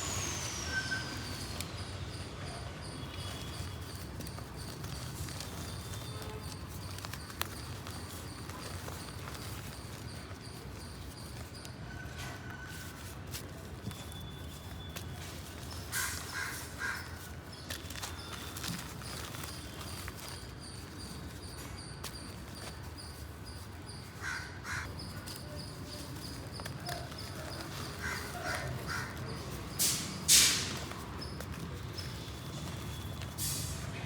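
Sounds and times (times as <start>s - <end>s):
crows cawing: 15.9s - 17.3s, 24.1s - 25.0s, 27.7s - 29.5s.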